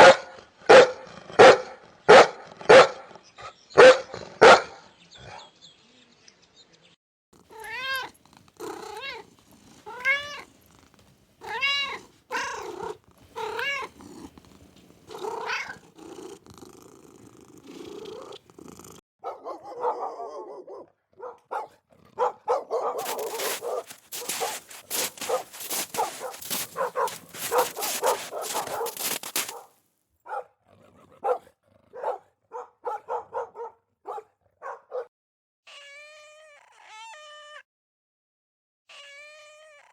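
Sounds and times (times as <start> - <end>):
cat meowing: 7.4 - 10.5, 11.4 - 14.0, 15.1 - 15.8, 23.0 - 29.4, 35.7 - 37.6, 38.9 - 39.9.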